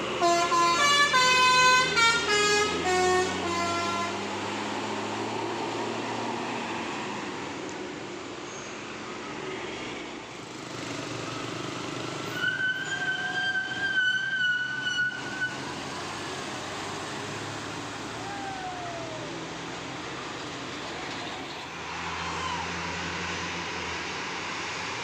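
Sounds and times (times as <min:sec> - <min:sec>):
bus engine drone: 0:00.0 - 0:25.0
road noise: 0:00.0 - 0:25.0
bus horn high held tone: 0:00.2 - 0:04.3.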